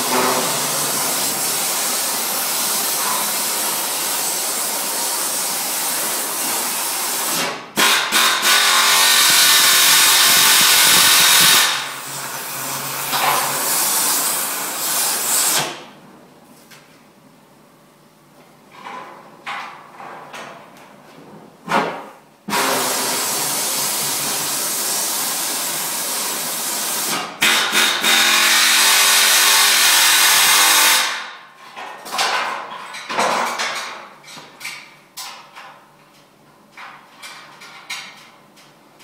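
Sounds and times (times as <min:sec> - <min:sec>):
power tool running: 0:00.0 - 0:15.8, 0:22.5 - 0:31.2.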